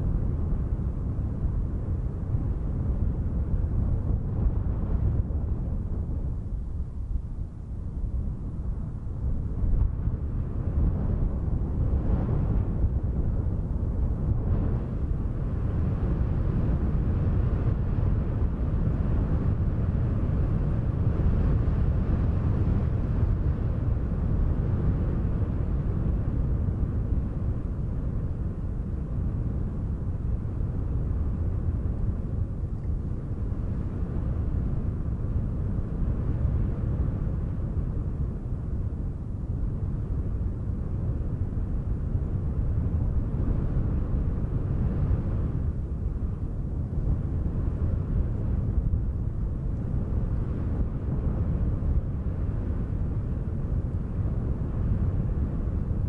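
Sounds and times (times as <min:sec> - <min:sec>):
wind rushing rumble: 0:00.0 - 0:56.0.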